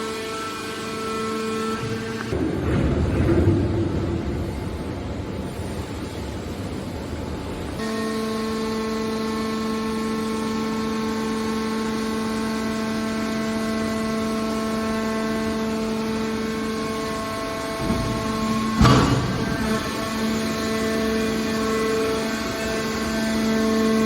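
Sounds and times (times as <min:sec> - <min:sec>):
hydraulic unit pitched hum: 0:00.0 - 0:24.0
machine low rumble: 0:15.0 - 0:24.0.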